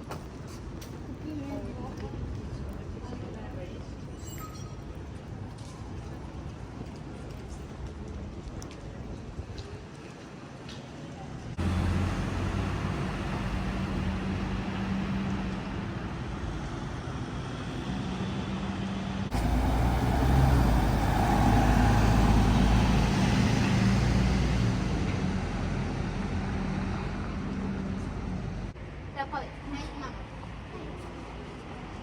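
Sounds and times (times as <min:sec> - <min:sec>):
passing cars and buses: 0:00.0 - 0:32.0
heavy vehicle passing close: 0:11.6 - 0:28.8.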